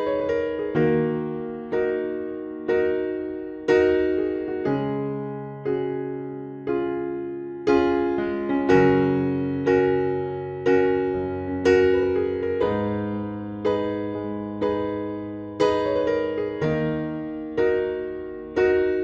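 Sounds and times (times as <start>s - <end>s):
electric piano chords: 0.0s - 19.0s.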